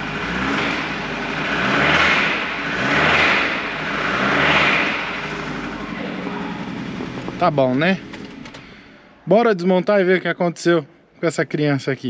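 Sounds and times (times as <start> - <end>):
car engine revving: 0.0 - 9.2.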